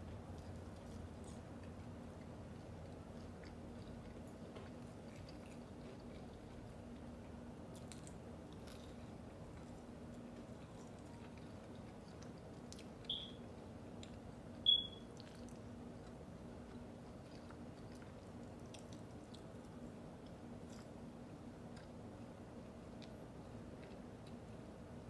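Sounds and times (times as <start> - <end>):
chewing food: 0.0 - 24.8
steady low hum: 0.0 - 25.0
short high-pitched electronic beeps: 13.1 - 13.4, 14.7 - 15.0.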